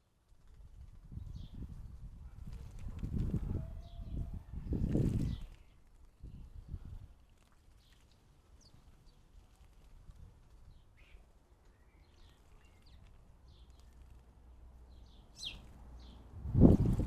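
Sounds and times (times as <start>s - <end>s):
birds chirping: 14.8s - 16.3s.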